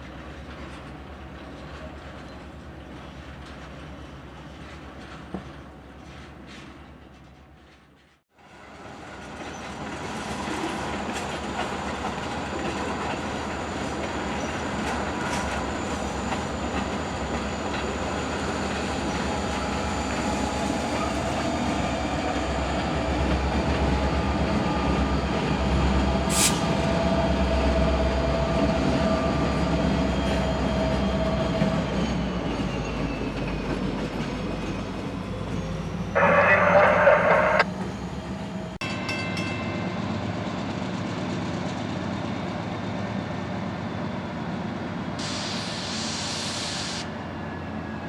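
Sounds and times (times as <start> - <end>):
diesel locomotives rumbling: 0.0 - 48.0
train running noise: 0.0 - 48.0.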